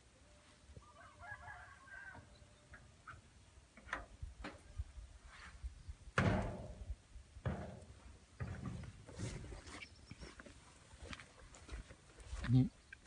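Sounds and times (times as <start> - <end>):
sharp knocks: 6.2 - 6.8, 7.4 - 8.8.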